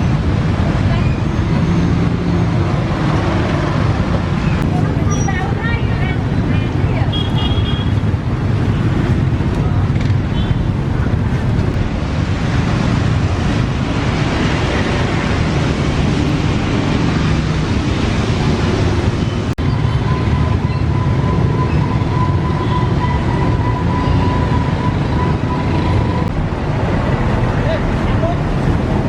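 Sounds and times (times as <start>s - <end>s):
loud low rumble: 26.2s - 29.0s.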